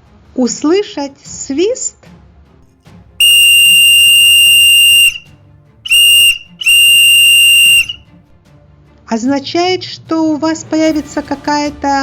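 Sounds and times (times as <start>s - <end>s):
whistle blasts: 3.2s - 5.3s, 5.9s - 8.0s.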